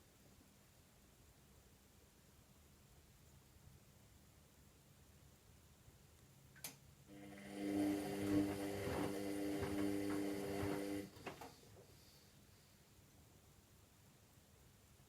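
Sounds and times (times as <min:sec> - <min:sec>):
washing machine drum motor humming: 0:07.1 - 0:11.5
washing machine clicks: 0:07.9 - 0:11.4
laundry tumbling and swishing: 0:08.2 - 0:11.4.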